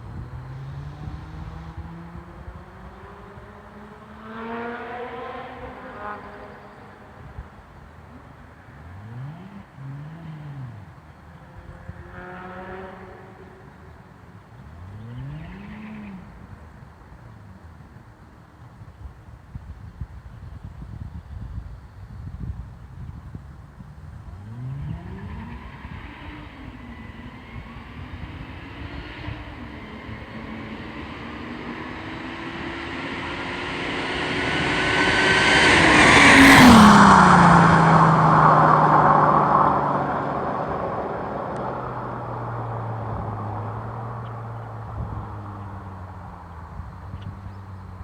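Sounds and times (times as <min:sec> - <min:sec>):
car accelerating past: 0:00.0 - 0:16.8, 0:24.0 - 0:48.0
car engine running: 0:28.0 - 0:48.0.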